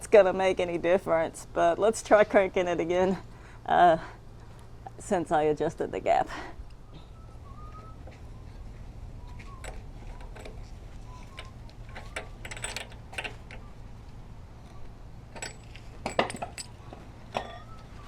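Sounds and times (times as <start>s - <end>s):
metal hand tools clinking: 11.4s - 13.6s, 15.4s - 16.8s.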